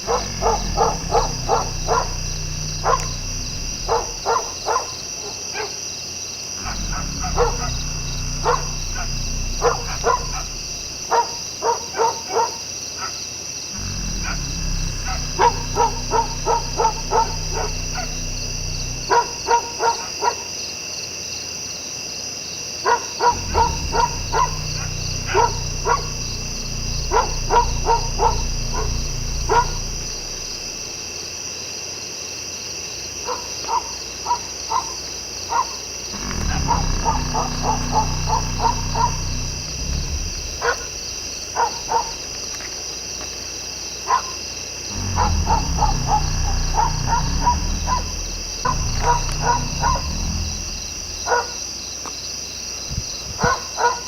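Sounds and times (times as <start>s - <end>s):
high-pitched drone: 0.0s - 5.2s, 6.6s - 11.4s, 13.8s - 19.8s, 23.3s - 31.2s, 36.2s - 42.4s, 44.9s - 51.6s
low rumble: 0.0s - 5.3s, 6.6s - 11.6s, 13.8s - 19.8s, 23.3s - 31.3s, 36.2s - 42.6s, 44.9s - 51.6s.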